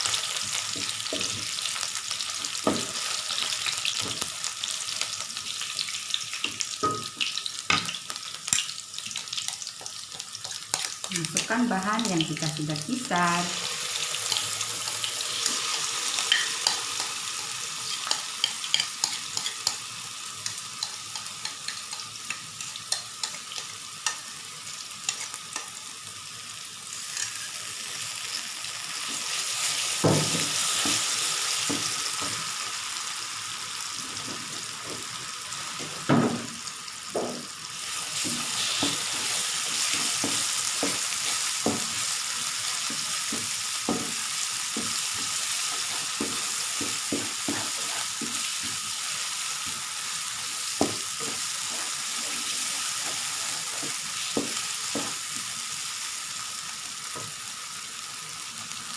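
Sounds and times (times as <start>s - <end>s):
curry paste sizzling in pan: 0.0s - 58.9s
spatula scraping and tapping pan: 9.4s - 11.5s, 14.3s - 17.2s, 17.9s - 19.8s, 38.2s - 42.1s, 42.7s - 48.9s, 50.8s - 55.2s.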